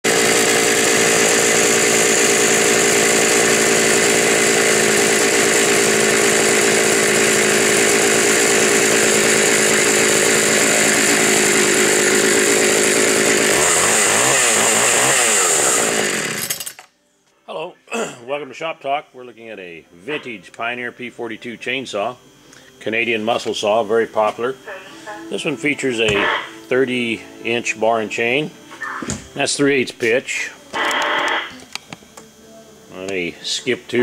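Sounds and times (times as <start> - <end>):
chainsaw running at high revs: 0.0 - 16.8.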